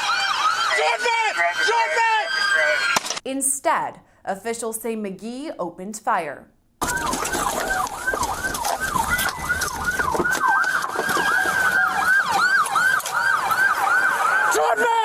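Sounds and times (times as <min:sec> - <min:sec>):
police sirens yelping: 0:00.0 - 0:03.0, 0:06.8 - 0:15.0.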